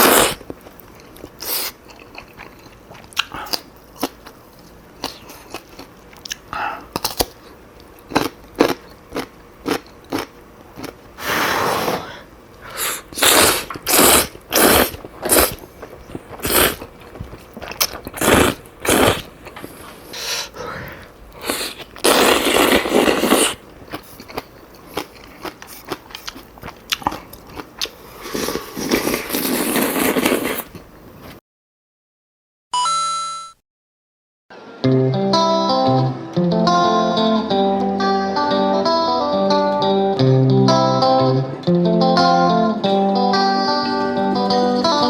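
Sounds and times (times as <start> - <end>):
slurping noodles: 0.0 - 0.4, 1.4 - 1.8, 11.2 - 16.9, 17.6 - 20.5, 21.4 - 24.3, 27.9 - 30.8.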